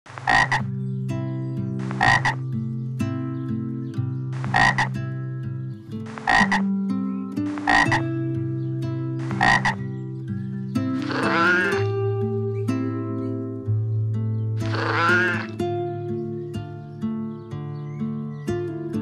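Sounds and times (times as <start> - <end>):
frog croaking: 0.1 - 0.8, 1.8 - 2.4, 4.4 - 5.1, 6.0 - 6.8, 7.4 - 8.2, 9.2 - 10.0, 10.9 - 12.0, 14.6 - 15.6
held musical chords: 0.2 - 19.0.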